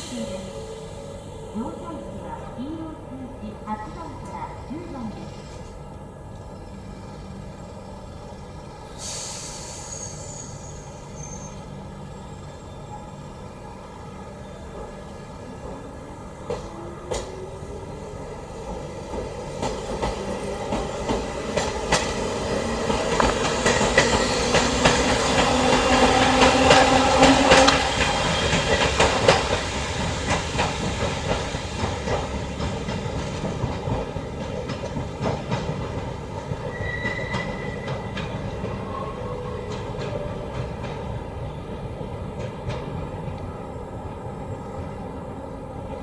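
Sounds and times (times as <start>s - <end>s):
electric train motors whining: 0.0s - 35.2s
high wheel squeal: 9.0s - 13.3s, 36.7s - 39.8s
train wheels clattering: 18.7s - 43.5s.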